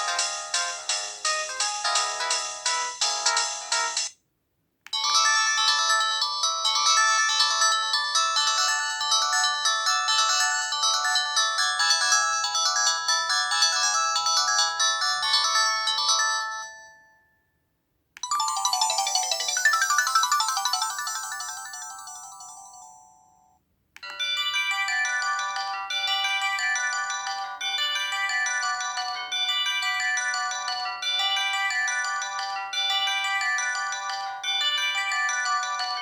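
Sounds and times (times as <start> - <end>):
synthesized ringtone melody: 18.2 - 23.5, 24.1 - 36.0.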